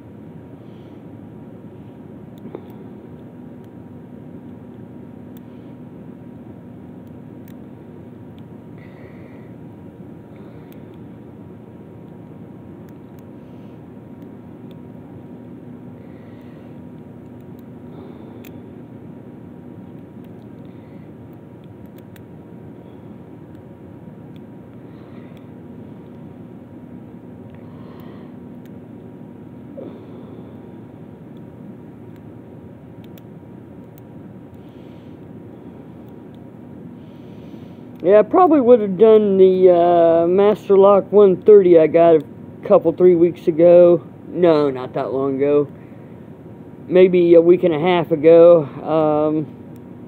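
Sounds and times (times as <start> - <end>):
faint hum: 0.0 - 50.0
faint light clicks: 33.0 - 34.7.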